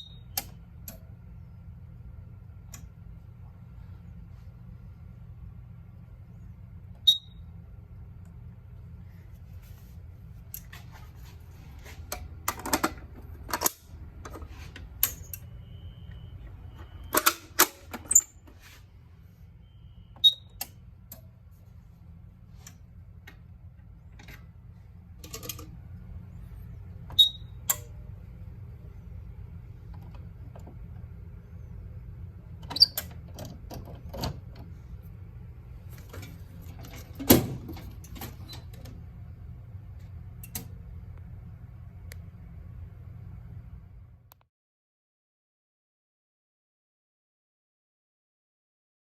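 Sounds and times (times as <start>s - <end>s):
steady low hum: 0.0s - 44.4s
mechanical clicks and clacks: 16.8s - 18.1s, 25.2s - 25.8s.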